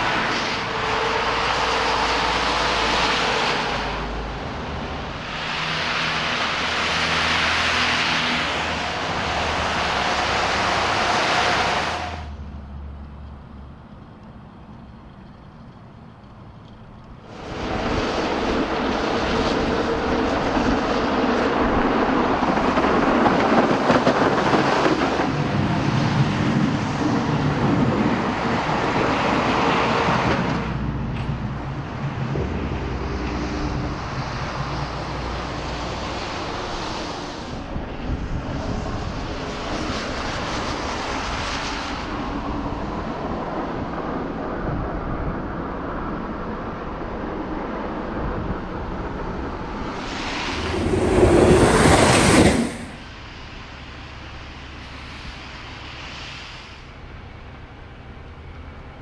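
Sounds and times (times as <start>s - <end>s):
vehicle engine: 0.0s - 41.6s, 48.1s - 59.0s
tyre hiss on snow: 49.9s - 53.1s, 54.8s - 57.0s.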